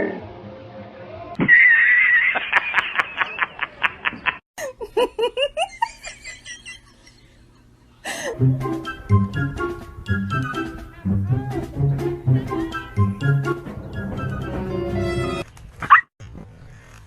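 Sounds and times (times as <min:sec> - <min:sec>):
high-pitched laughter: 0:01.4 - 0:07.4.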